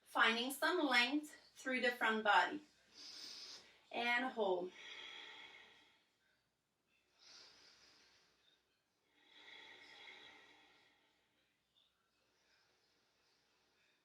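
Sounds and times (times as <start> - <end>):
faint slow breathing: 2.8 - 3.9, 4.6 - 14.0.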